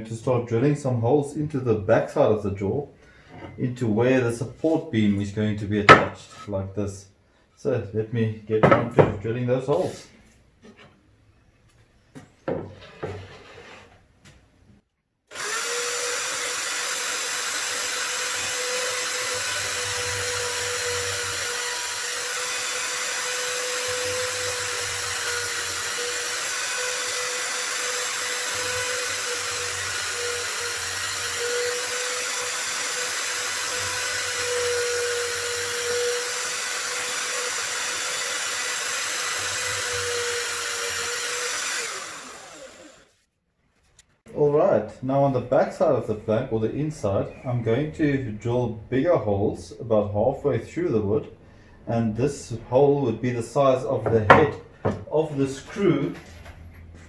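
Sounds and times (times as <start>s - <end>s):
electric drill boring into wood: 15.3s - 43.2s.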